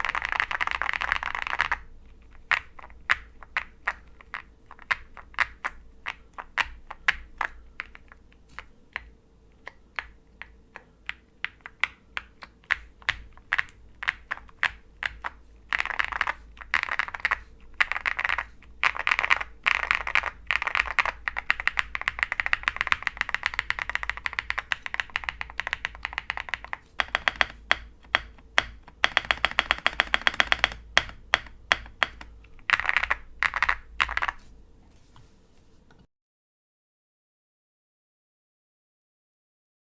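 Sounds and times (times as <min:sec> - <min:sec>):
typing on mechanical keyboard: 0:00.0 - 0:08.0, 0:11.1 - 0:34.5.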